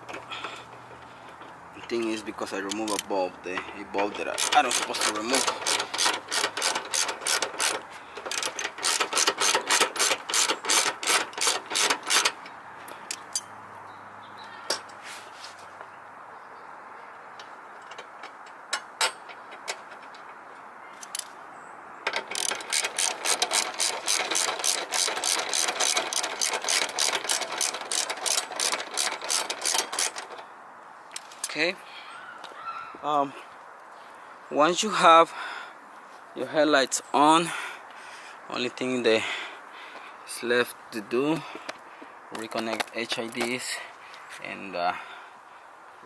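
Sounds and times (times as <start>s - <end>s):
hand ratchet clicking: 2.6s - 3.1s, 4.0s - 12.4s, 22.1s - 30.4s.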